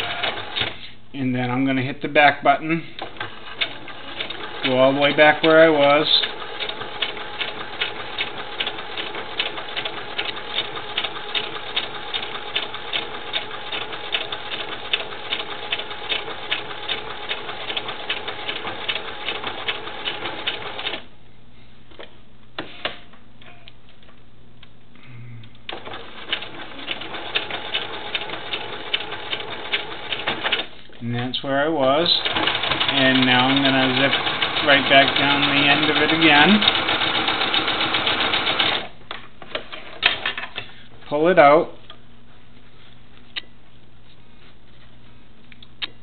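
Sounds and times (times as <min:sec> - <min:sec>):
sewing machine stitching: 0:00.0 - 0:00.8, 0:03.0 - 0:21.0, 0:25.7 - 0:30.7, 0:32.1 - 0:38.9.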